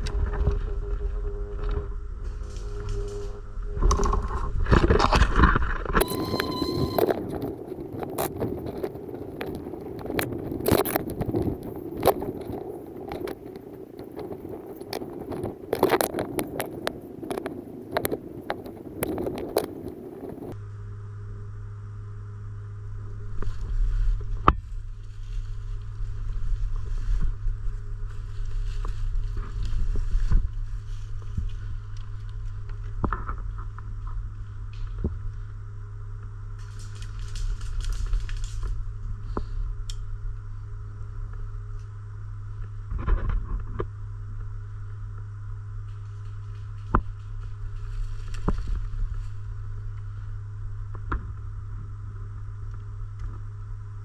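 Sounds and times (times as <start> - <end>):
steady low hum: 0.0 - 54.0
rustling movement: 6.0 - 20.6
sharp clicks and knocks: 6.0 - 20.6.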